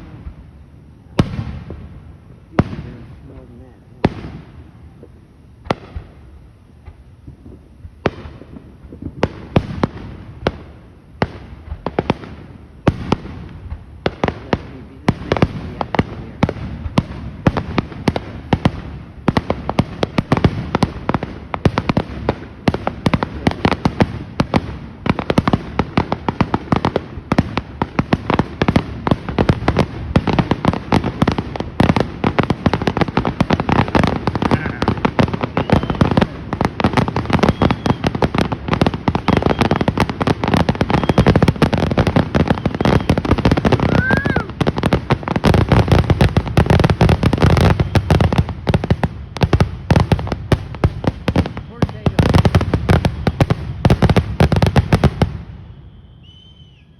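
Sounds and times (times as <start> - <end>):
fireworks bursting: 0.0 - 56.9
fireworks crackling: 0.0 - 56.9.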